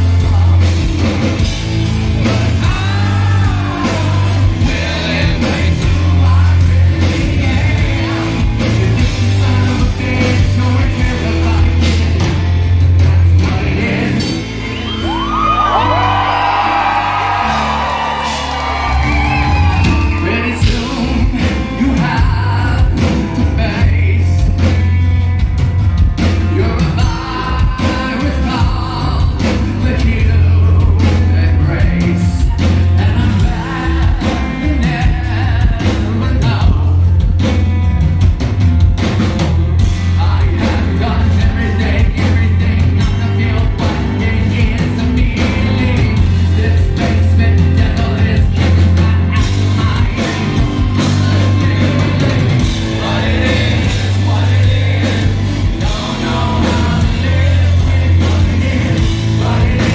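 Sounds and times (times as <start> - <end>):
man singing: 0.0 - 17.9, 19.1 - 25.0, 26.2 - 37.5, 39.8 - 59.9
rock band playing: 0.0 - 59.9
pounding drums: 32.8 - 59.9.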